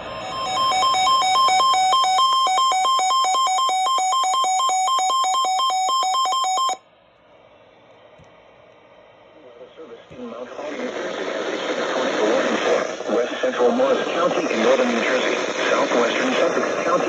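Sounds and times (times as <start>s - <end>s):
two-tone electronic alert beeping: 0.0s - 6.8s
faint radio static: 9.2s - 17.0s.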